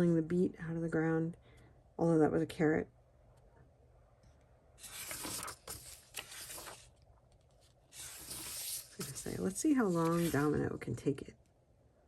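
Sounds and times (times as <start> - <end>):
paper pages rustling: 4.8 - 10.6.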